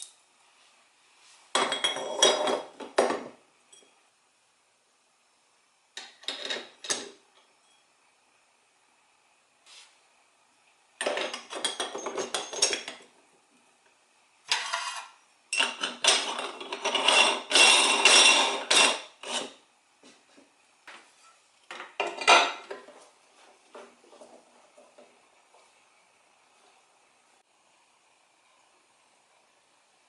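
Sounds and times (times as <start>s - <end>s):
metal kitchenware clattering: 1.6s - 3.9s, 11.0s - 13.0s, 14.5s - 19.6s, 21.2s - 22.9s.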